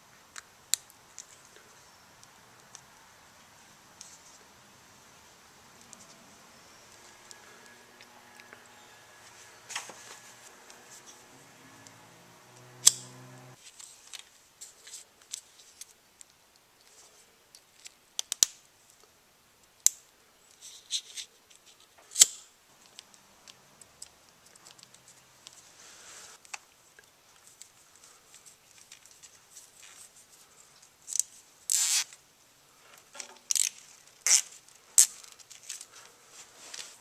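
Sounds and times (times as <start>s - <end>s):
faint steady hum: 0.0s - 13.6s
clicks and snaps of wires: 11.8s - 14.3s, 17.6s - 18.7s, 21.2s - 25.6s.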